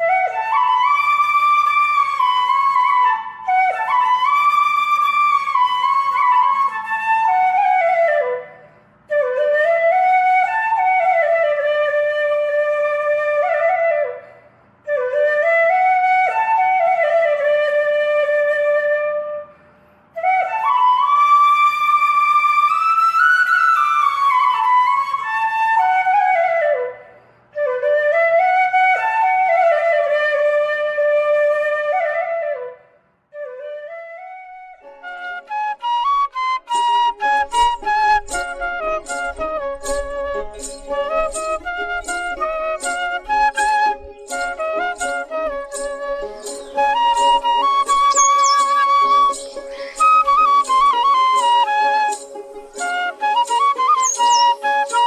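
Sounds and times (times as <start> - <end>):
solo flute melody: 0.0 - 55.0.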